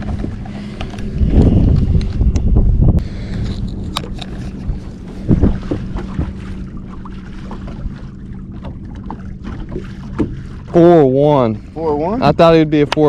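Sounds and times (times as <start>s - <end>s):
boat low hum: 0.0s - 13.0s
wind rumbling on microphone: 0.0s - 13.0s
knocks and thump: 5.3s - 6.4s, 9.4s - 10.4s.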